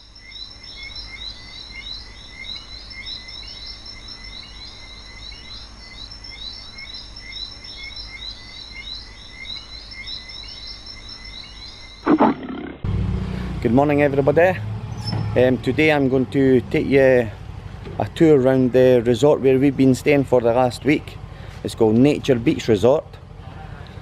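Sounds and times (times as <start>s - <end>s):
high insect tones: 1.4s - 12.9s
short chirping calls: 10.7s - 12.8s.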